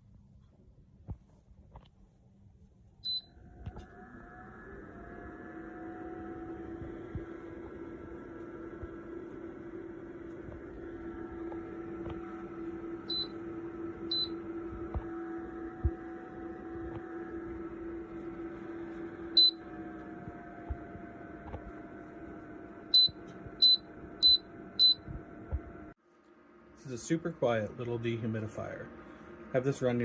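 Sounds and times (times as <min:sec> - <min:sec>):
dehumidifier fan humming: 0:02.0 - 0:30.0
short beeps: 0:23.0 - 0:25.1.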